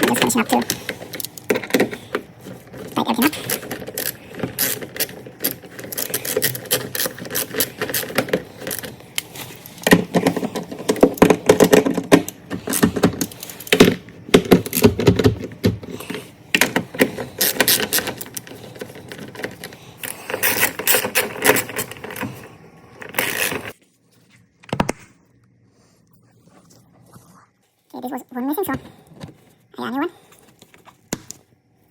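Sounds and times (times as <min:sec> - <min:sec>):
fasteners clicking and rattling: 0:00.0 - 0:23.8
plastic and tools scraping: 0:00.0 - 0:25.2.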